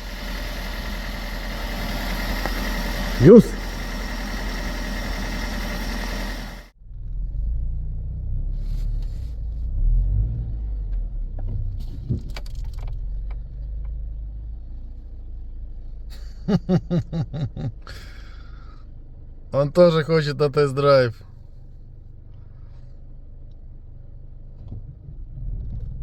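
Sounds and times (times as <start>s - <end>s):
short pulses: 0.0s - 6.7s
car engine rumbling: 0.0s - 26.0s.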